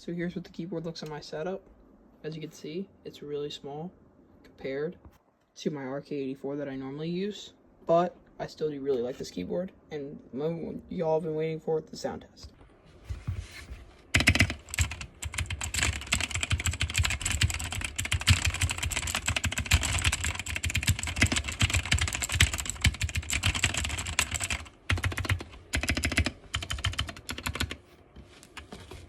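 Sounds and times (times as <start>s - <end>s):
fast mechanical keyboard typing: 14.1s - 27.8s.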